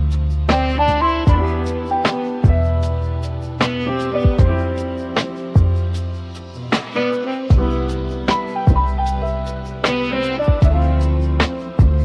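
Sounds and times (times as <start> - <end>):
deep kick drum: 0.0 - 1.7, 2.4 - 3.0, 4.2 - 4.8, 5.6 - 6.0, 7.5 - 7.9, 8.7 - 9.2, 10.5 - 11.1, 11.8 - 12.0
lo-fi hip-hop instrumental: 0.0 - 12.0.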